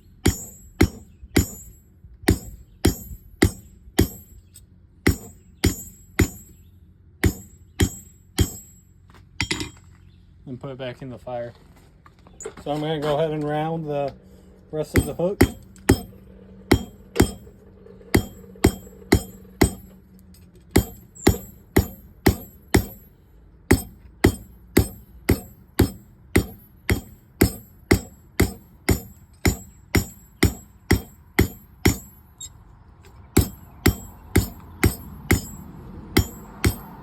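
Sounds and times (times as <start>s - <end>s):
hammer striking steel on anvil: 0.2s - 6.6s, 7.2s - 9.8s, 14.9s - 17.5s, 18.1s - 20.0s, 20.7s - 32.2s, 33.4s - 37.0s.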